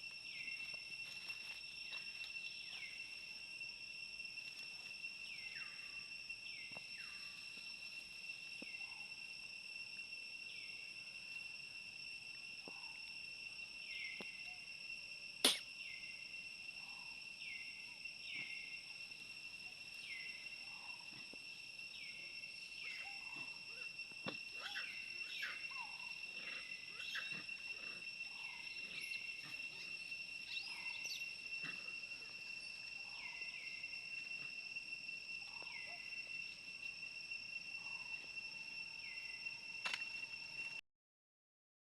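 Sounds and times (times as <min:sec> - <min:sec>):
insects droning: 0:00.0 - 0:40.8
sharp click: 0:15.4 - 0:15.6, 0:39.8 - 0:40.1.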